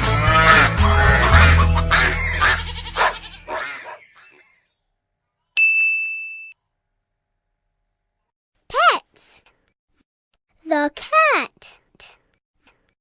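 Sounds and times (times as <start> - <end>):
goat or sheep bleating: 0.0 - 3.8.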